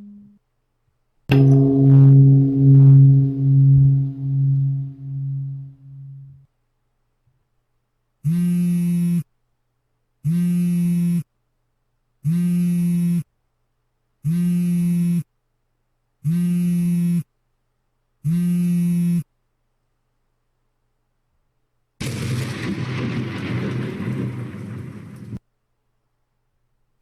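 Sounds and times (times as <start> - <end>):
low electronic buzzer: 1.3 - 6.4, 8.2 - 9.3, 10.2 - 11.3, 12.2 - 13.3, 14.2 - 15.3, 16.2 - 17.3, 18.2 - 19.3.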